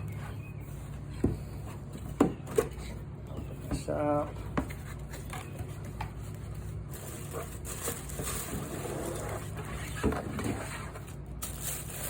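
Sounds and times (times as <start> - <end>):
cardboard packaging rustling: 4.7 - 12.0.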